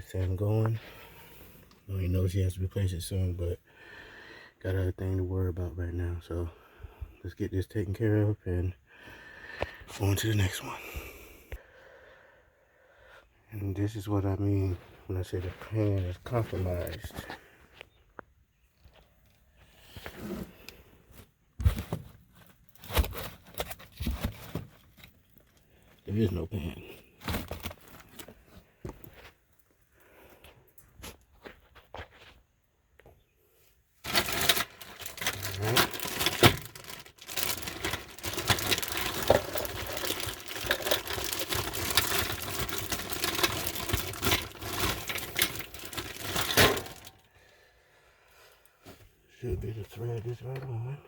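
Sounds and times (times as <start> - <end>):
hands handling plastic parts: 21.6 - 26.1, 27.1 - 29.3, 34.0 - 47.3
rusted metal pan crunching: 34.0 - 47.3.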